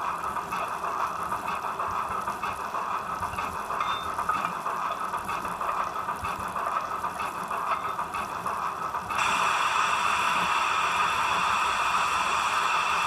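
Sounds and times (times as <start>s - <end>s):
steam locomotive hiss from small speaker: 9.0s - 13.0s.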